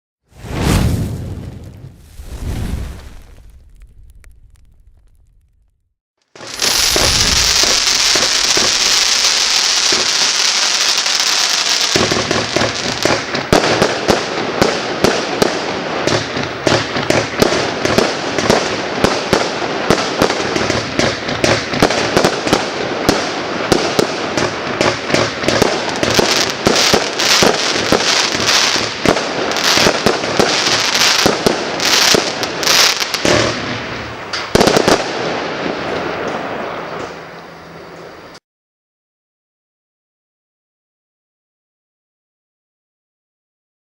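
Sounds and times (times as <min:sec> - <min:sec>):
firework sizzling hiss: 0:00.4 - 0:05.0, 0:06.4 - 0:13.2
firework pops and crackling bangs: 0:00.4 - 0:37.2.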